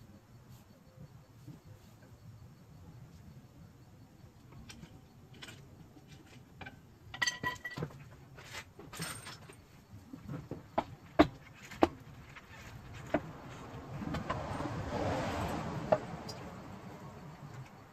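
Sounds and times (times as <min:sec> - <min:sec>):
metal tools clinking: 0:07.1 - 0:08.0, 0:08.9 - 0:09.6.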